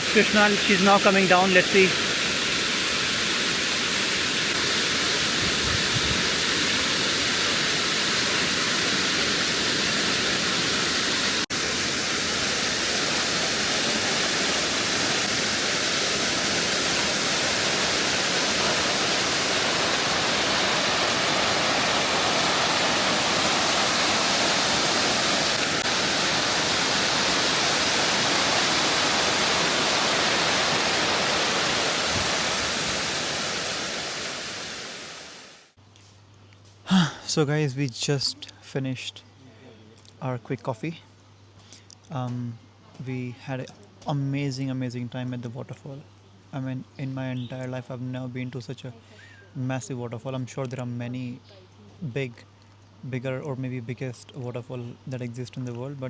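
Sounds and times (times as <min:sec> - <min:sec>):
waterfall rushing: 0:00.0 - 0:35.7.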